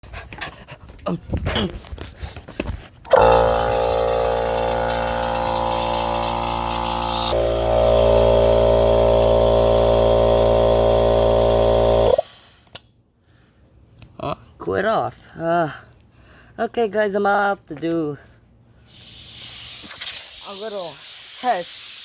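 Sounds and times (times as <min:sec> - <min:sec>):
air compressor running: 0:03.1 - 0:12.8, 0:18.9 - 0:22.0.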